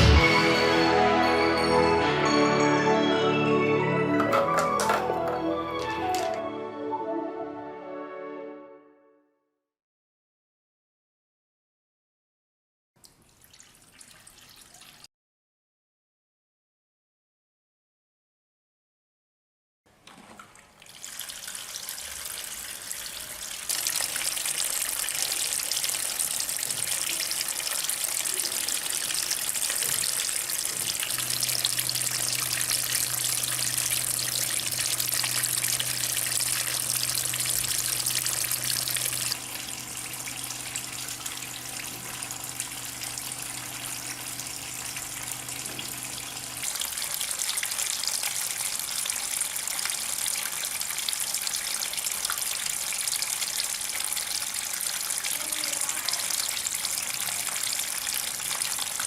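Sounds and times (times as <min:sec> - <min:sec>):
fountain water splashing: 0:23.8 - 0:42.6
low steady hum: 0:28.1 - 0:46.7.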